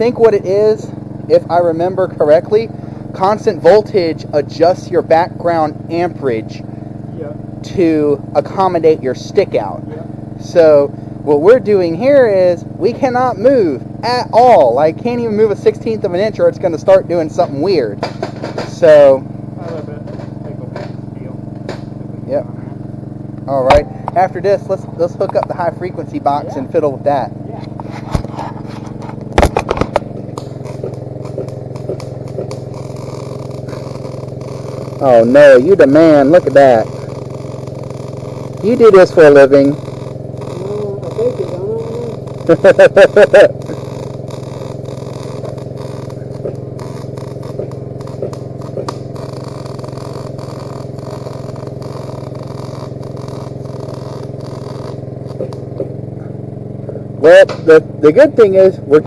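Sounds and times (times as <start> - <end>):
welder engine running: 0.0 - 59.0
welding arc crackling: 0.0 - 59.0
sharp knocks: 18.0 - 18.8
sharp clicks: 27.7 - 35.0, 39.7 - 55.9.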